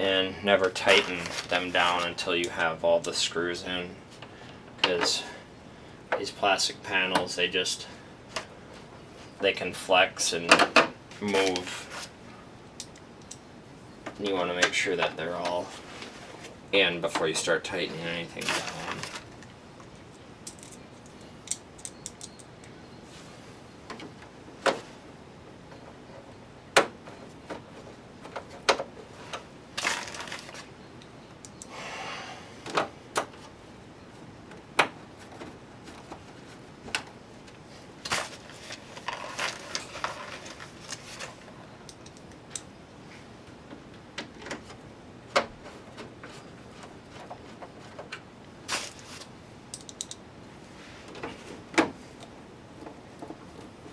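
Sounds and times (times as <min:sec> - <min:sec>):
scraping and rustling: 0:00.5 - 0:03.3, 0:10.3 - 0:12.4, 0:14.1 - 0:30.8, 0:35.0 - 0:42.4, 0:43.0 - 0:53.9.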